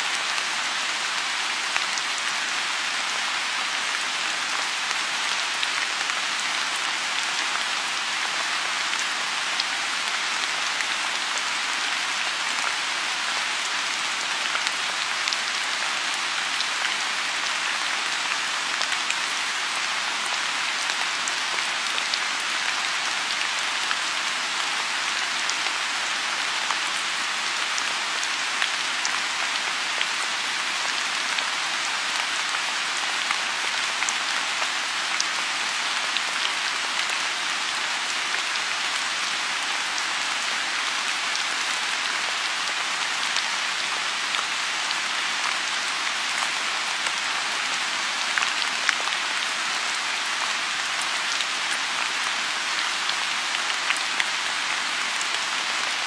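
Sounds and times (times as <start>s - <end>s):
rain falling on a pond: 0.0s - 56.0s.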